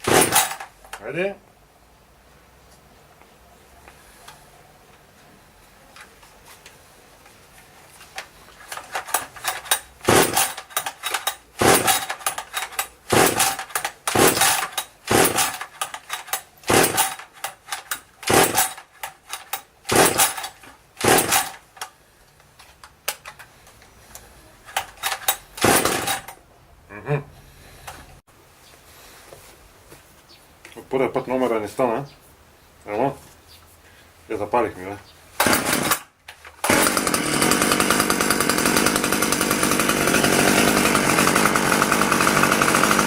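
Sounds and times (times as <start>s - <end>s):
chainsaw starter cord pulls: 0.0s - 1.1s, 8.2s - 21.9s, 24.7s - 26.4s, 35.4s - 43.0s.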